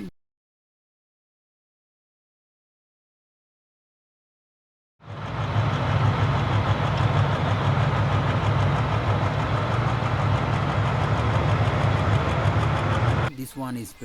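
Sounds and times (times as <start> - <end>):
low rumbling machine noise: 5.0 - 13.4.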